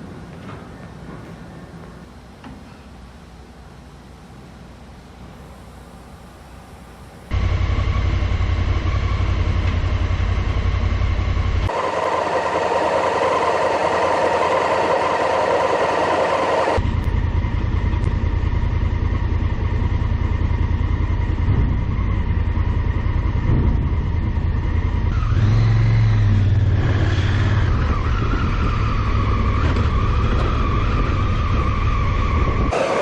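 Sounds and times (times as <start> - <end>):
motorcycle engine running: 7.3 - 14.2, 16.6 - 32.7.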